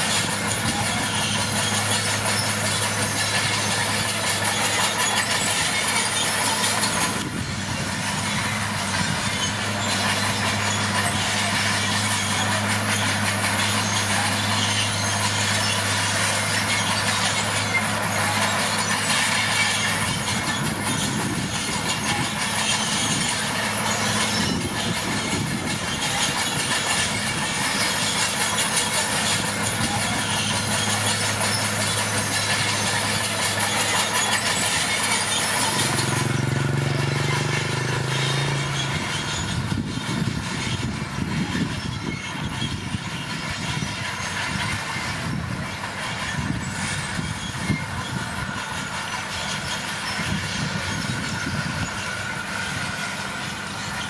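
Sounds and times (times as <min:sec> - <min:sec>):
bulldozer diesel engine: 0:00.0 - 0:54.0
steel tracks clattering: 0:00.0 - 0:54.0.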